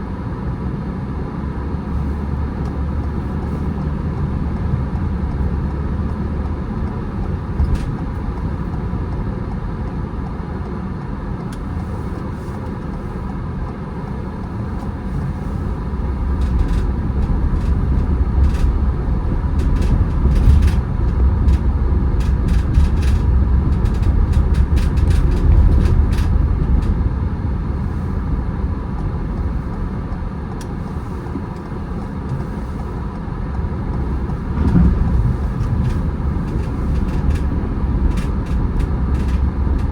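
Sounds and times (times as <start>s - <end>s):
car road rumble: 0.0s - 39.9s.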